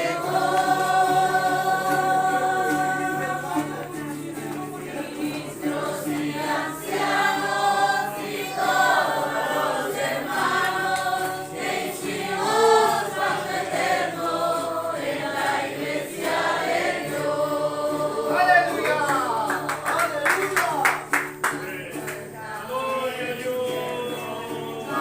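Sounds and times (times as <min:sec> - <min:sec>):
congregation singing a hymn: 0:00.0 - 0:25.0.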